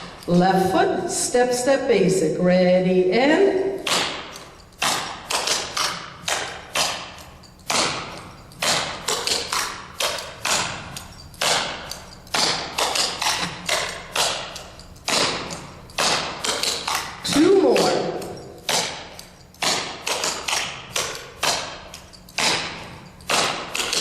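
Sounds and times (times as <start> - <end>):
tap shoes striking hard floor: 3.8 - 7.1, 15.1 - 21.8.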